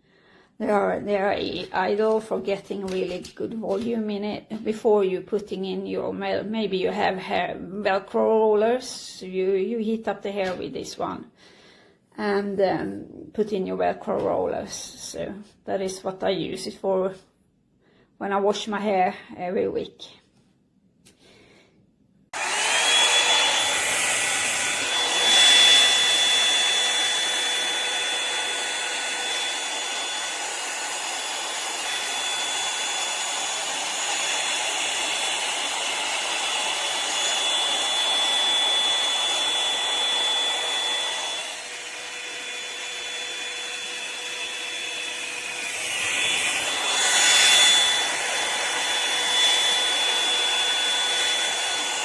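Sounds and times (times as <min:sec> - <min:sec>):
hot-air brush motor whine: 0:22.3 - 0:52.0.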